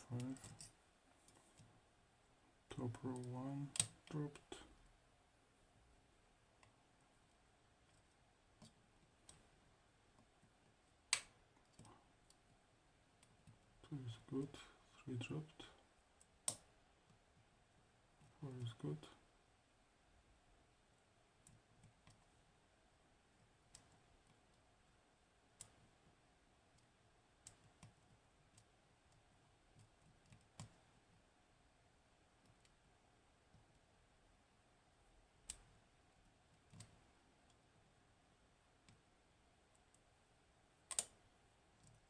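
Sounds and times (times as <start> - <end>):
lock pick clicks: 40.9 - 41.2.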